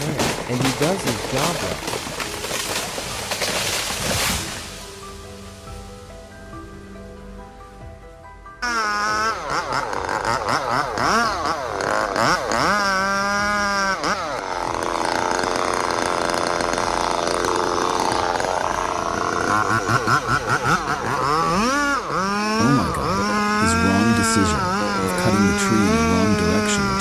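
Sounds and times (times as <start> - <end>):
chainsaw engine revving: 0.0 - 4.9, 8.6 - 27.0.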